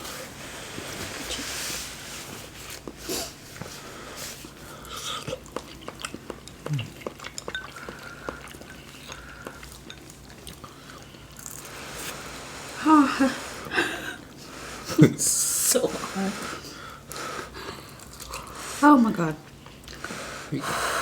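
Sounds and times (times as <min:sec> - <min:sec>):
chewing and mouth noises: 0:02.7 - 0:12.1, 0:17.7 - 0:18.6, 0:19.4 - 0:20.1
utensils clinking against dish: 0:07.4 - 0:07.9.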